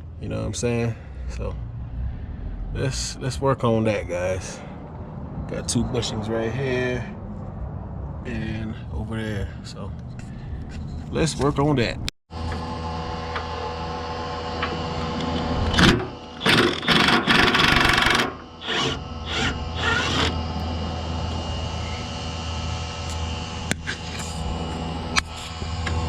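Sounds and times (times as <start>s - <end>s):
steady hum: 11.9s - 26.0s
loud harsh tool bursts: 15.5s - 20.7s.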